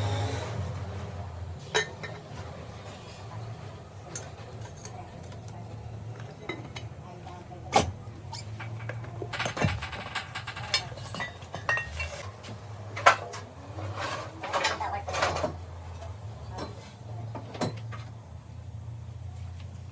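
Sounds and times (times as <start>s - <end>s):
metal tools clinking on workbench: 8.4s - 12.2s.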